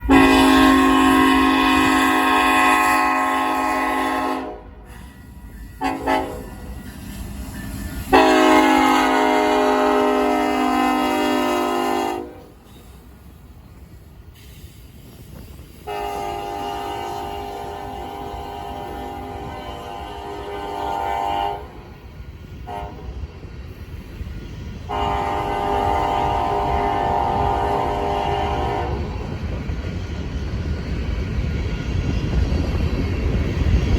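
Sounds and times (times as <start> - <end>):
locomotive air horn blasts: 0.0 - 4.8, 5.8 - 6.8, 8.1 - 12.7, 15.8 - 21.9, 22.6 - 23.2, 24.9 - 29.3
low rumble of train: 0.0 - 33.9.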